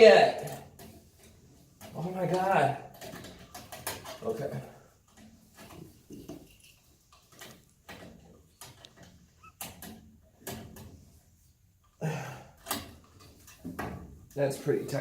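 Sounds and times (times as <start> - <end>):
scraping or rustling: 0.5 - 11.7.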